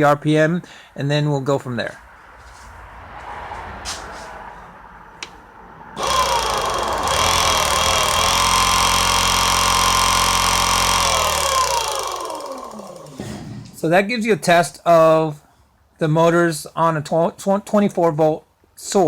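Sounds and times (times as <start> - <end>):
electric motor whining: 6.0 - 13.4.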